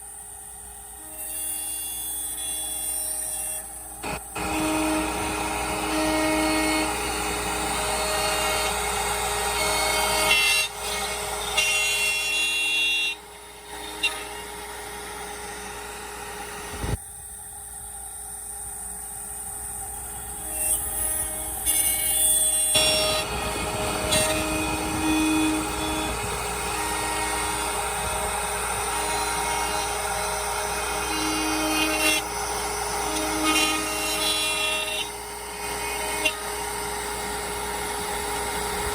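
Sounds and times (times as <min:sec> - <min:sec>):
router spindle whine: 0:00.0 - 0:38.9
router bit cutting wood: 0:00.8 - 0:17.0, 0:19.6 - 0:38.9.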